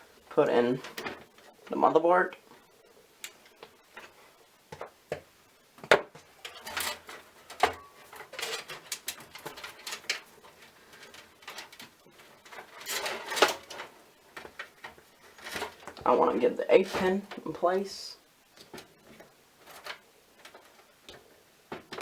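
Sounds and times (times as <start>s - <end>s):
cables rustling: 6.1s - 22.0s.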